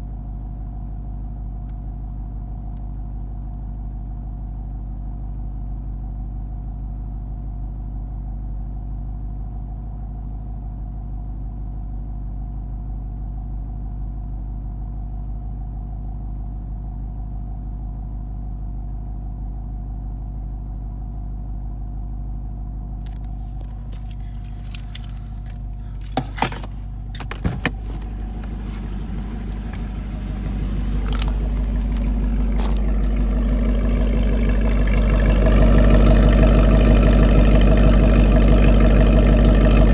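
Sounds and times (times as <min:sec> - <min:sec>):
clicking and rattling handling noises: 0:23.1 - 0:35.8
car engine idling: 0:23.1 - 0:39.9.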